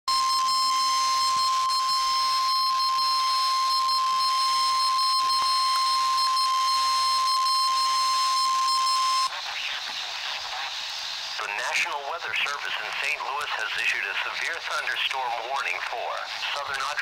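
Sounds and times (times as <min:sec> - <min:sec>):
high electronic warning tone: 0:00.1 - 0:09.3.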